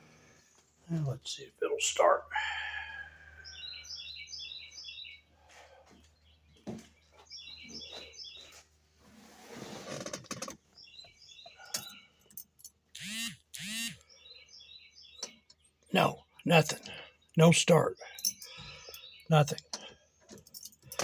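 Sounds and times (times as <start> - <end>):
small bird chirping: 3.2 - 5.3, 6.0 - 8.7, 10.6 - 12.4, 13.0 - 20.6.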